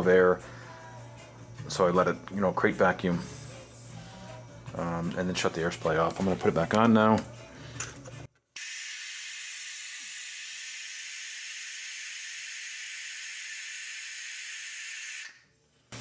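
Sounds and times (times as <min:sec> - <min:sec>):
compressed air hissing: 0:08.6 - 0:15.3.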